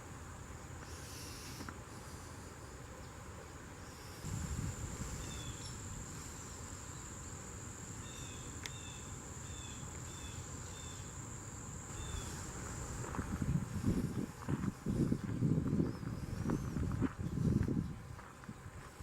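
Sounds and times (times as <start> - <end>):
insect trilling: 0.8 - 2.2, 3.8 - 17.6.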